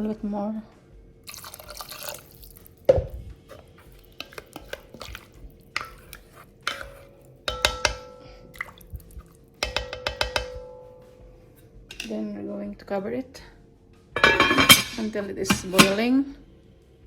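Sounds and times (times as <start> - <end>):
utensil knocking in metal pot: 6.7 - 8.7, 9.6 - 11.2, 14.2 - 16.1.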